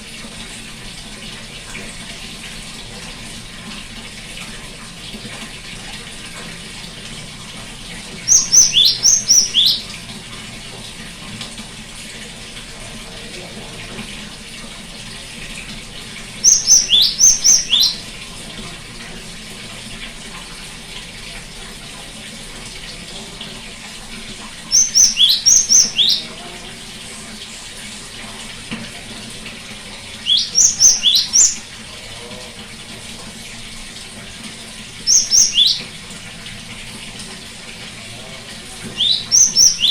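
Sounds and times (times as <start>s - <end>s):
bird singing sharp notes: 8.3s - 9.8s, 16.4s - 18.0s, 24.7s - 26.3s, 30.2s - 31.6s, 35.1s - 35.8s, 39.0s - 39.9s.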